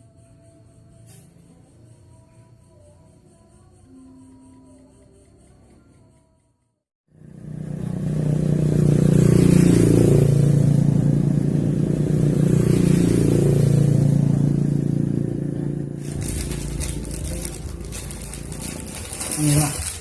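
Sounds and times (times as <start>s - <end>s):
engine running: 7.1s - 20.0s.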